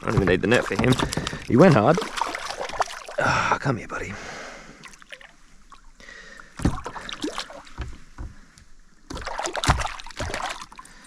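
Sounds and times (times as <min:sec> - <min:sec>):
sharp water splashes: 0:00.0 - 0:03.3, 0:04.8 - 0:07.9, 0:09.1 - 0:11.0.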